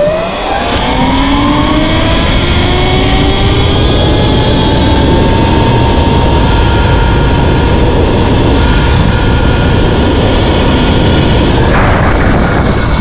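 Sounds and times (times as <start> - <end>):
electric motor whining: 0.0 - 13.0
wind rush on microphone: 0.0 - 13.0.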